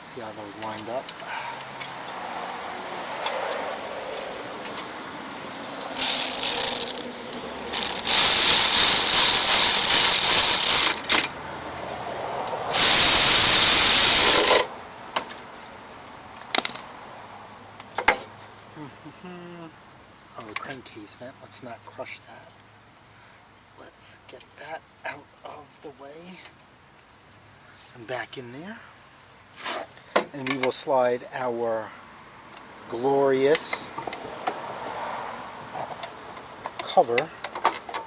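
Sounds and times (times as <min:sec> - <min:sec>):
power drill driving bolts: 0:05.8 - 0:07.1, 0:07.7 - 0:11.4, 0:12.7 - 0:14.7.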